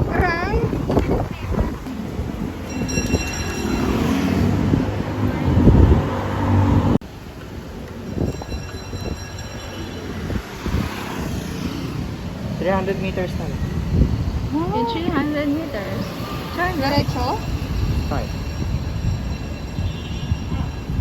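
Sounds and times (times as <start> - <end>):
heavy vehicle rumbling with whine: 0.0 - 7.1
traffic rumble: 0.0 - 21.0.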